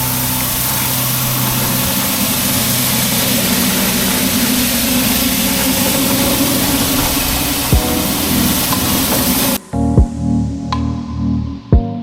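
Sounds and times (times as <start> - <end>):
pressure washer engine running: 0.0 - 9.6
water spray hissing: 0.0 - 9.6.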